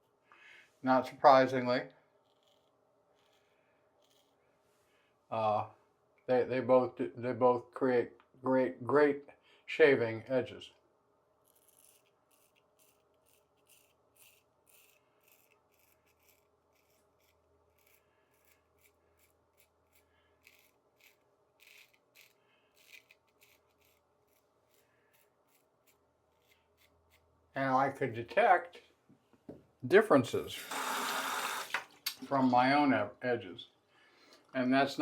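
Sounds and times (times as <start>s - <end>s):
razor scraping stubble: 2.2s - 4.4s, 11.4s - 27.4s.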